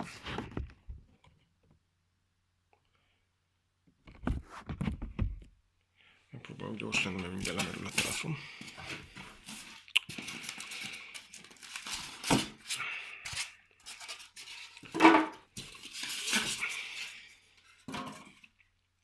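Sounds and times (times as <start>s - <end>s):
packaging rustling and crinkling: 7.0s - 18.4s.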